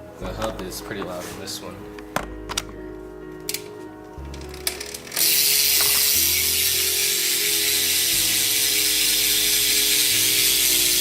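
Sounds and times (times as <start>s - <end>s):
bicycle freewheel hub buzzing: 4.5s - 11.0s.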